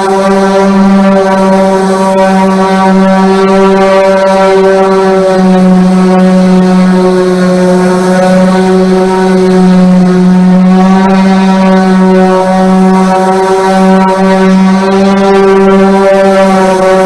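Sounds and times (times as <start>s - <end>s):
electric sander running: 0.0s - 17.0s.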